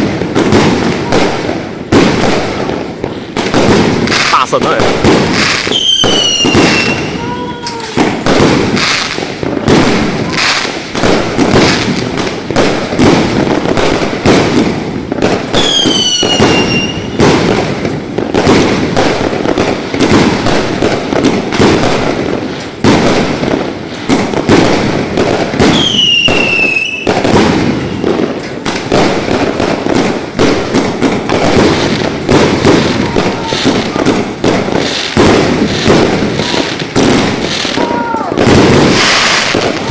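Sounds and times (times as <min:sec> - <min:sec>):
fireworks cracking and banging: 0:00.0 - 0:39.9
firework whistles dropping in pitch: 0:05.7 - 0:07.2, 0:15.6 - 0:17.1, 0:25.7 - 0:27.2.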